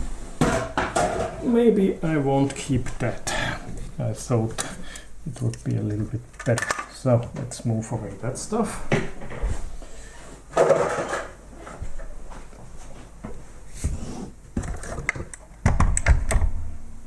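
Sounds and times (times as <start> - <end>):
plastic parts knocking and clattering: 0.4 - 1.4, 4.4 - 7.8, 10.5 - 11.4, 14.6 - 16.7
plastic parts rustling: 2.4 - 7.9.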